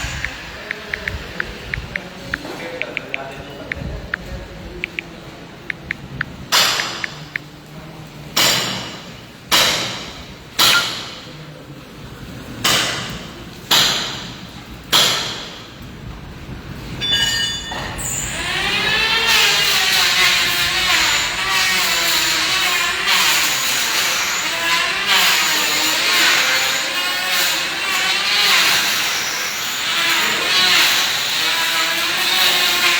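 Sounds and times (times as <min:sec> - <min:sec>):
electric power tool running: 0:18.3 - 0:32.9.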